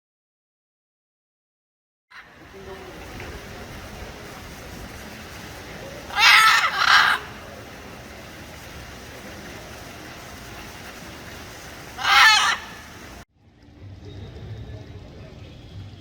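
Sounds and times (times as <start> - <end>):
steady background hiss: 2.2 - 13.2
bird harsh call: 5.1 - 13.2.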